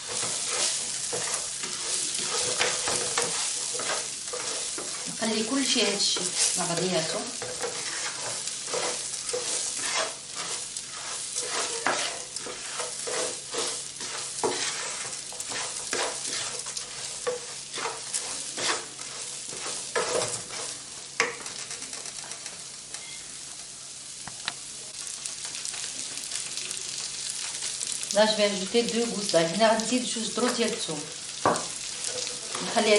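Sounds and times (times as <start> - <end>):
spoon scraping a pan: 0.0 - 21.6, 30.4 - 32.9
vegetables sizzling in a pan: 0.0 - 32.9.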